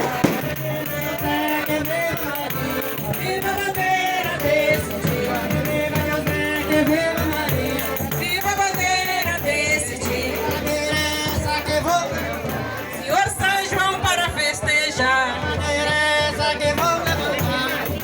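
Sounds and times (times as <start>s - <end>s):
sharp bang: 0.0s - 0.8s
group singing folk song: 0.0s - 18.0s
rhythmic percussion: 0.0s - 18.0s.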